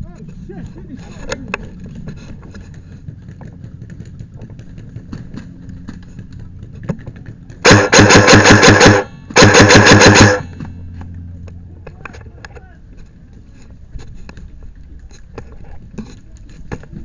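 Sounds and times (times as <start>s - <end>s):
faint low hum: 0.0s - 17.0s
airsoft gun full-auto bursts: 7.6s - 10.5s.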